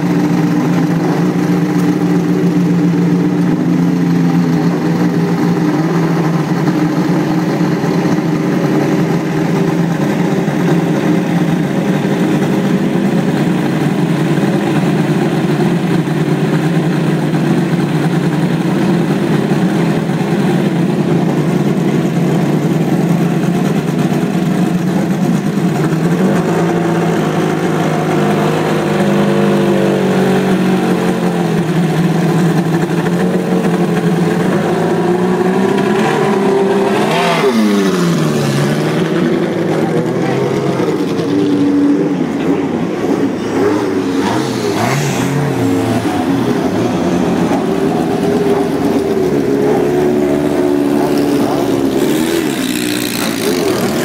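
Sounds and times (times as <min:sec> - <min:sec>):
car engine revving: 0:00.0 - 0:54.0
racing car engines idling: 0:00.0 - 0:54.0.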